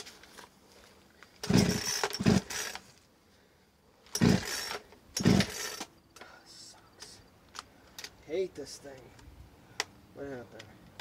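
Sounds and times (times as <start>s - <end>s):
chainsaw pull-cord starter yanked: 1.4s - 2.9s, 4.1s - 5.9s
engine turning over: 1.4s - 2.9s, 4.1s - 5.9s.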